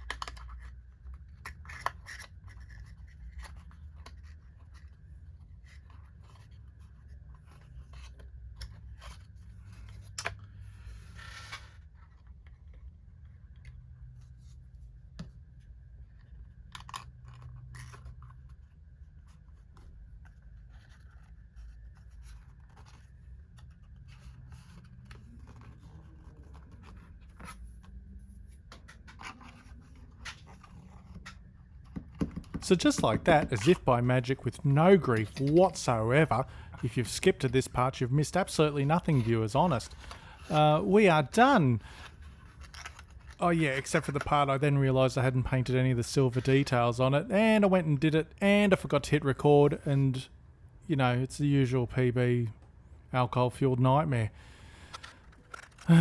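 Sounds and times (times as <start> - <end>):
small parts clicking and scraping: 0.0 - 12.7, 42.0 - 43.4, 54.9 - 55.9
low steady hum: 2.4 - 56.0.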